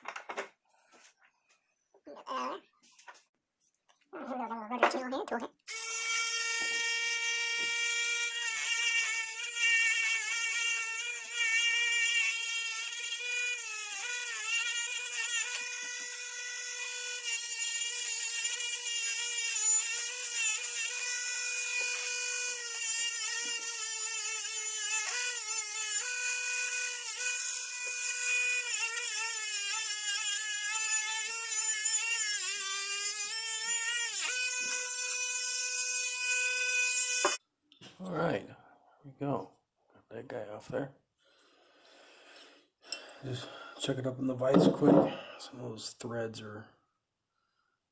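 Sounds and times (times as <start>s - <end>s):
rotary tool motor whine: 5.7s - 37.4s.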